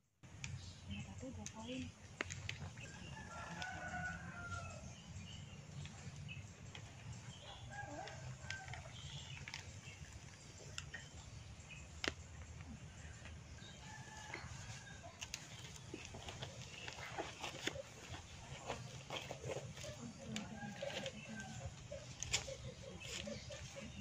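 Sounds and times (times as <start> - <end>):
rooster crowing: 2.9 - 4.8.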